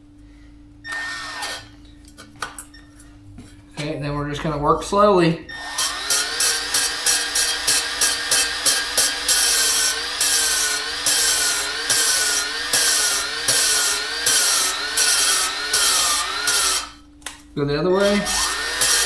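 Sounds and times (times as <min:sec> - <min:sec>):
drill motor whine: 0:00.8 - 0:01.8, 0:05.5 - 0:17.0, 0:17.9 - 0:19.0
valve grinding on seat: 0:00.9 - 0:01.8, 0:05.5 - 0:17.1, 0:17.9 - 0:19.0.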